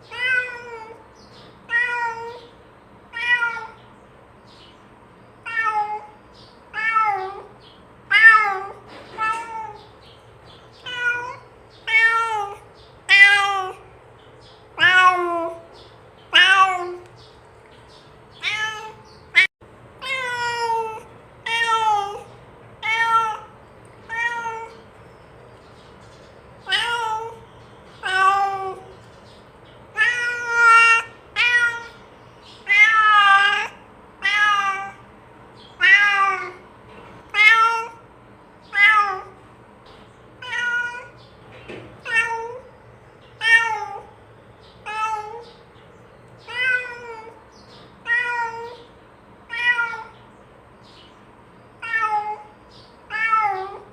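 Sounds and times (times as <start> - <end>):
cat meowing: 0.0 - 1.0, 1.7 - 2.5, 3.1 - 3.8, 5.4 - 7.5, 8.1 - 9.9, 10.8 - 13.9, 14.8 - 15.7, 16.3 - 17.1, 18.4 - 24.8, 26.6 - 27.4, 28.0 - 28.9, 30.0 - 32.0, 32.6 - 35.0, 35.8 - 36.6, 37.3 - 38.0, 38.7 - 39.4, 40.4 - 41.2, 42.0 - 42.7, 43.4 - 44.1, 44.8 - 45.6, 46.4 - 47.4, 48.0 - 48.9, 49.5 - 50.2, 51.8 - 53.9.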